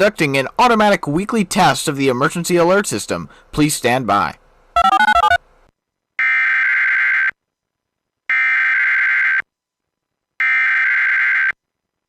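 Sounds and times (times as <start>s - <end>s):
warbling digital data tones: 4.8s - 5.4s.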